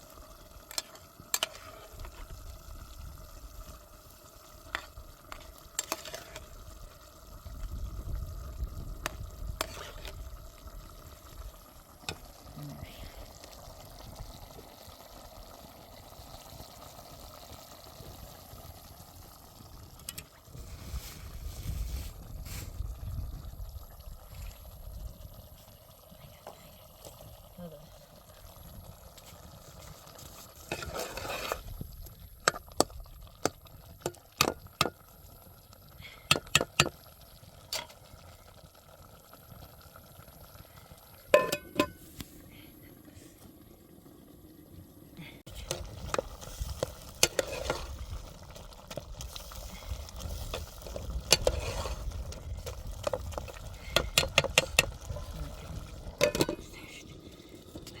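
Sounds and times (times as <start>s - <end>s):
utensil scraping stir in pot: 0.6s - 2.8s, 4.5s - 7.0s, 9.0s - 10.4s, 29.2s - 34.9s, 45.5s - 58.0s
utensil clinking against pot: 41.4s - 42.0s, 56.2s - 56.7s.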